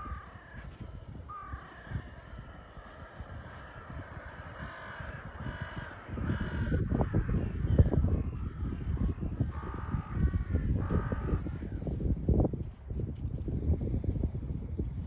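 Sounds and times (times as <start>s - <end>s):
crows cawing: 0.0s - 12.0s
wind rumble on microphone: 0.0s - 15.0s.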